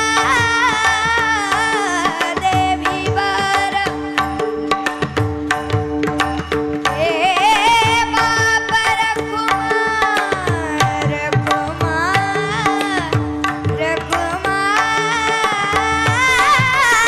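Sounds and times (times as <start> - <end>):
person singing with vibrato: 0.0 - 4.4, 7.0 - 17.0
tabla rhythm: 0.0 - 17.0.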